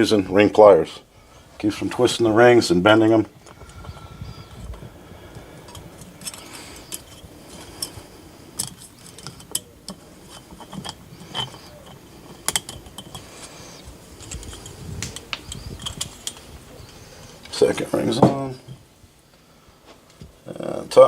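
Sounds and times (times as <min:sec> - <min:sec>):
metal piston ring clicking: 0:05.7 - 0:08.0, 0:08.6 - 0:13.4.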